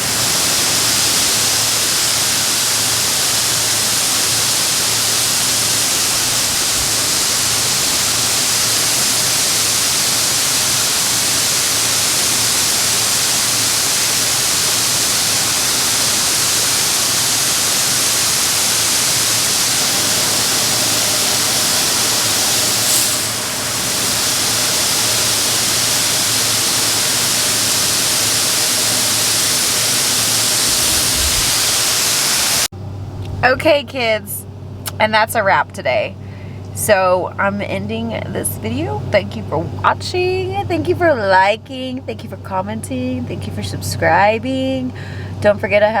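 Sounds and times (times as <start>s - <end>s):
loud rushing noise: 18.6s - 26.9s, 28.0s - 32.7s.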